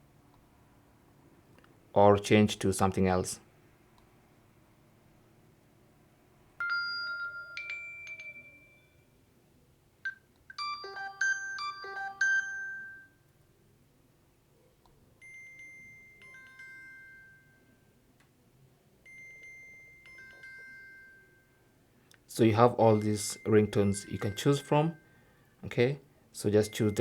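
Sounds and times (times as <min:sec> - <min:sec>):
bell-like ringtone chime: 0:06.6 - 0:09.2, 0:10.6 - 0:13.2, 0:15.2 - 0:17.9, 0:19.0 - 0:21.8, 0:22.8 - 0:25.4, 0:26.6 - 0:27.0
soft ringtone chime: 0:06.6 - 0:09.2, 0:10.0 - 0:13.3, 0:15.2 - 0:18.0, 0:19.0 - 0:21.9, 0:22.8 - 0:25.4, 0:26.6 - 0:27.0
melodic ringtone snippet: 0:10.1 - 0:13.1.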